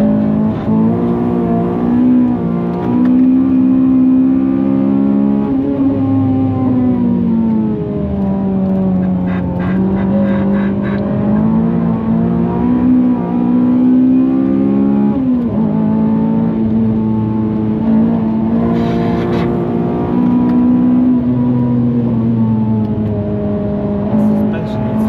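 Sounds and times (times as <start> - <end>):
car engine at high revs: 0.0 - 25.0
engine stuttering pulses: 8.9 - 11.7.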